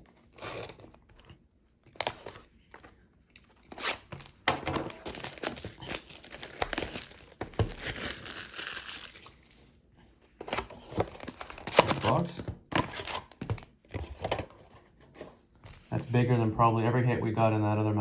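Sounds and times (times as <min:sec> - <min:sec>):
packaging crinkling and tearing: 0:00.1 - 0:09.8, 0:10.4 - 0:14.7.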